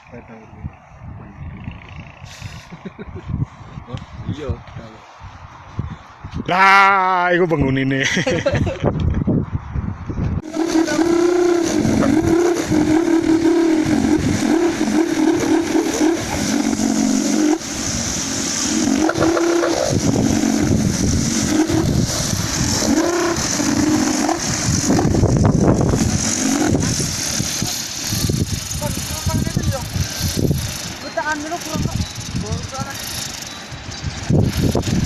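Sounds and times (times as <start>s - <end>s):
road and wind noise: 0.0s - 35.0s
engine revving: 10.4s - 35.0s.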